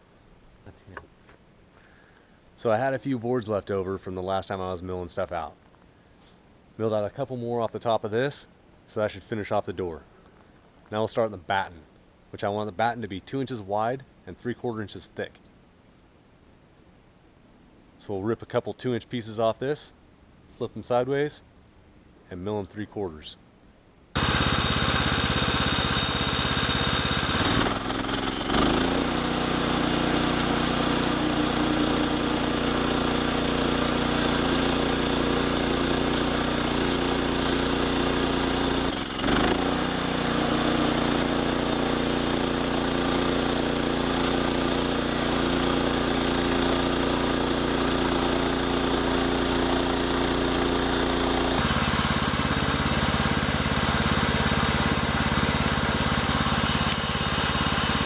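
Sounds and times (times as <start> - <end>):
sawmill engine running: 24.2 - 58.0.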